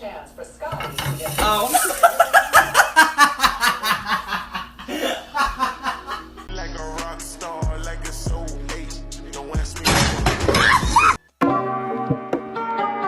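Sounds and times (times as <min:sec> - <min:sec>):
person laughing: 0:01.7 - 0:06.5.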